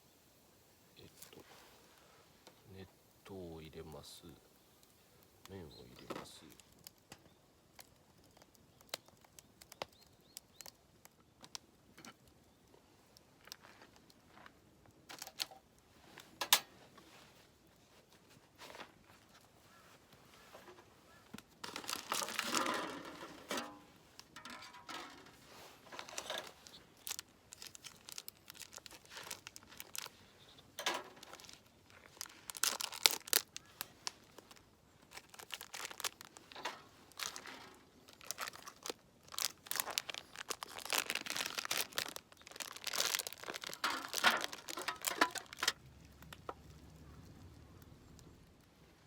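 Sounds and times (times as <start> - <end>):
plastic packaging crinkling and tearing: 7.7 - 10.8, 15.1 - 15.7, 21.1 - 47.4.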